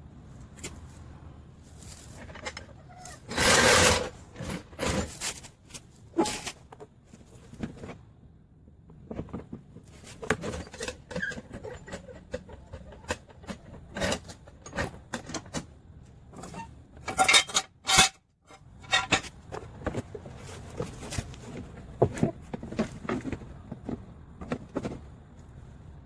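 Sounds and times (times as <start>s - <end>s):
metal tools clinking: 16.4s - 19.3s.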